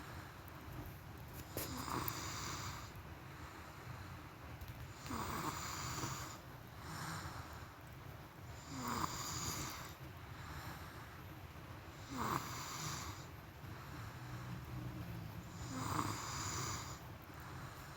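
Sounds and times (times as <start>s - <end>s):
person snoring: 5.0s - 6.4s, 8.6s - 9.9s, 12.0s - 13.3s, 15.5s - 17.0s.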